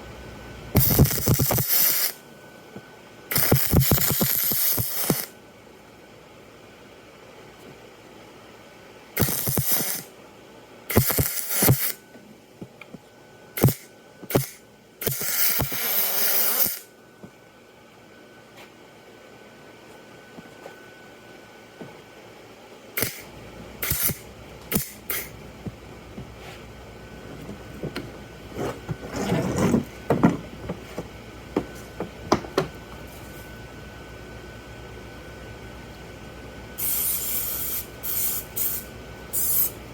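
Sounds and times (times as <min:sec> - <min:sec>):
faint steady hum: 0:00.0 - 0:39.9
crackling welding arc: 0:00.8 - 0:02.2, 0:03.3 - 0:05.4, 0:09.2 - 0:10.1, 0:10.9 - 0:12.0, 0:13.6 - 0:16.9, 0:23.0 - 0:25.4, 0:36.8 - 0:39.8
rustling and clattering: 0:27.2 - 0:31.8.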